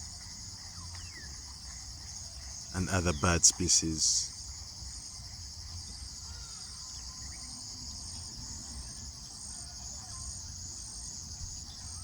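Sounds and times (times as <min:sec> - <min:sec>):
high-pitched insect chorus: 0:00.0 - 0:12.0
pulsing insect call: 0:00.0 - 0:12.0
faint bird chirps: 0:05.8 - 0:12.0.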